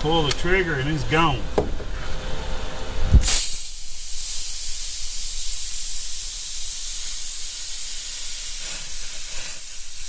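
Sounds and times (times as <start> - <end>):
plasma cutter hissing: 3.2 - 10.0.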